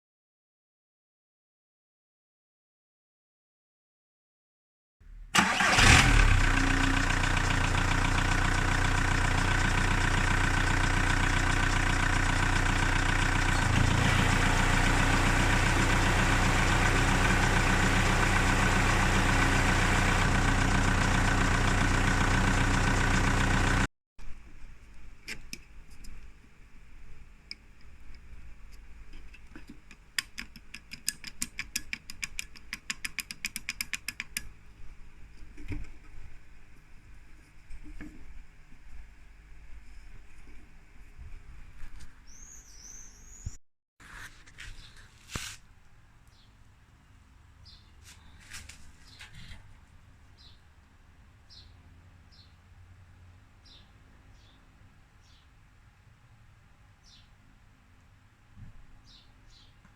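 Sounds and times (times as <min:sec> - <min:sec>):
car engine starting and idling: 0:05.0 - 0:23.9.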